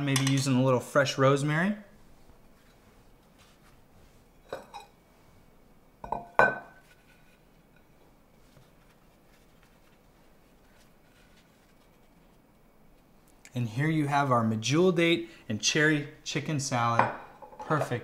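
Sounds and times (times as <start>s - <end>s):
dishes and utensils clinking: 4.4s - 5.0s.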